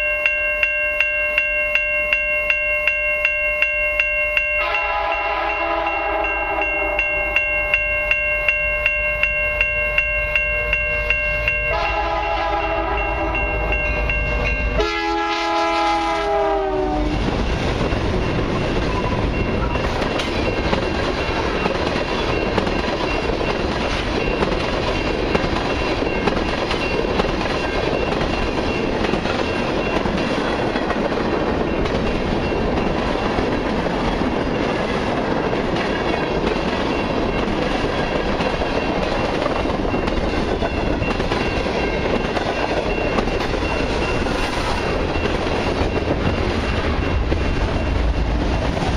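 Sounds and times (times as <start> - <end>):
crossing bell clanging: 0.0 - 48.9
train wheels rushing on rail: 0.0 - 48.9
locomotive air horn blasts: 4.6 - 6.9, 11.7 - 13.4, 14.8 - 17.2
train cars clacking over joints: 11.5 - 48.9.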